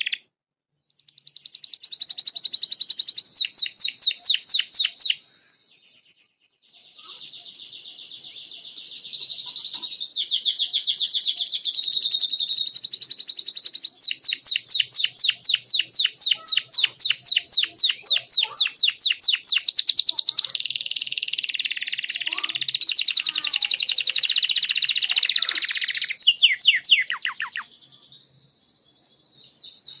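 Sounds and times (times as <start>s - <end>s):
canary singing trills: 0.0s - 0.3s, 0.9s - 30.0s.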